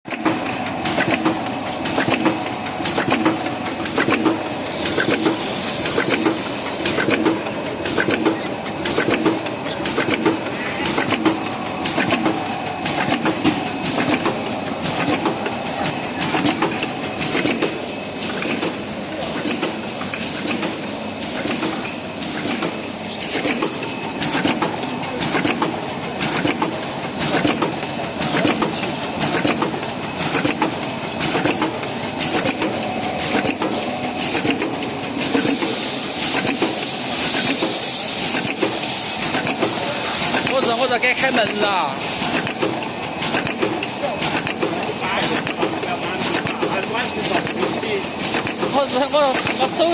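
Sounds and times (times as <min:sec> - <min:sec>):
machine clattering: 0:00.1 - 0:49.9
hiss: 0:04.5 - 0:07.2, 0:35.4 - 0:40.4.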